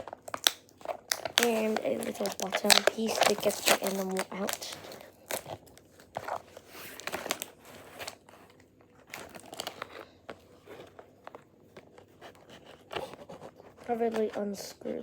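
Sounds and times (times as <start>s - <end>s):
toy packaging crinkling: 0.0s - 8.2s, 9.0s - 11.4s.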